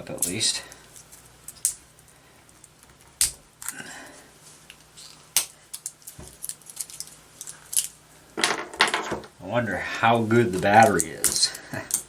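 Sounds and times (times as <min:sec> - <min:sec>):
packaging crinkling: 0:04.6 - 0:08.0.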